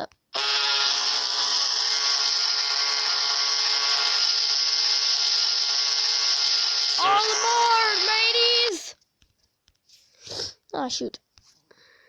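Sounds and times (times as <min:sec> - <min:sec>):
rasping tone from small speaker: 0:07.0 - 0:08.9.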